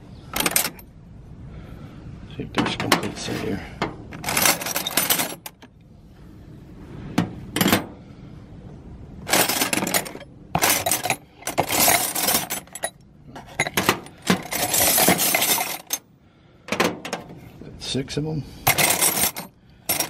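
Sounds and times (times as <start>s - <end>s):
steel wrenches clinking: 0.3s - 0.8s, 4.2s - 5.7s, 9.3s - 16.1s, 18.6s - 20.0s.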